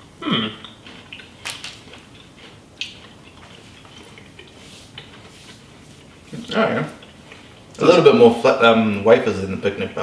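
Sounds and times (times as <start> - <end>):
chocolate wafer crunching: 0.6 - 8.0.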